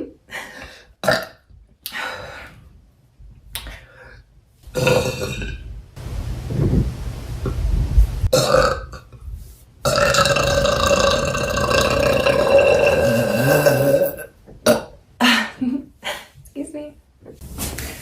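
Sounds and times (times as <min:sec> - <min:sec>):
woman burping: 0:01.0 - 0:01.4, 0:04.8 - 0:05.6, 0:08.3 - 0:09.2, 0:09.9 - 0:15.5
low rumbling noise: 0:04.7 - 0:12.9.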